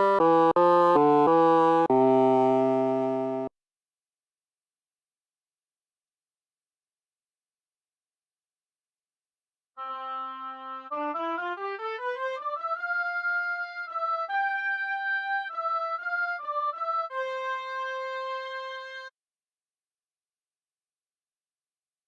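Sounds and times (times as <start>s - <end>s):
solo brass melody: 0.0s - 3.5s, 9.8s - 19.1s.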